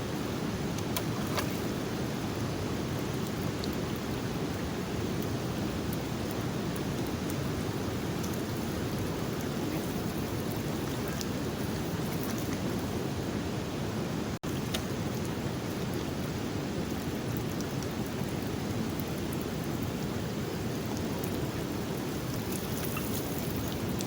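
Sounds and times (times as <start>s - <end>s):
fast-flowing floodwater: 0.0s - 24.0s.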